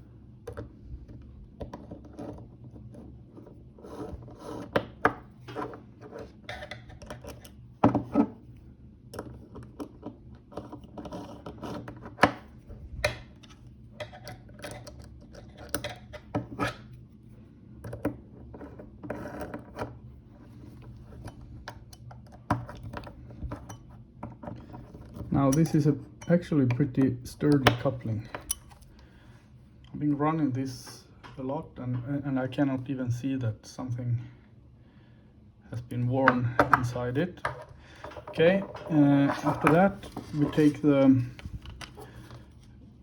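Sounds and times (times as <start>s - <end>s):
low steady hum: 0.0s - 43.0s
scraping and clicking of screwdriver: 9.2s - 12.3s, 13.4s - 16.8s, 28.2s - 29.0s, 36.7s - 42.5s.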